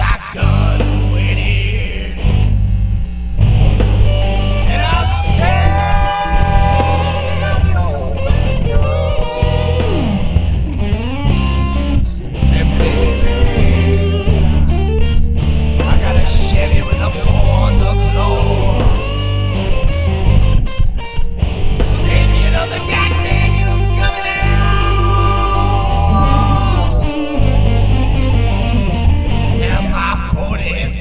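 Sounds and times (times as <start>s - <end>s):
man singing: 0.0s - 2.4s, 4.2s - 15.0s, 15.8s - 19.4s, 21.9s - 27.8s, 29.5s - 31.0s
blues guitar: 0.0s - 31.0s
heavy steady bass: 0.0s - 31.0s.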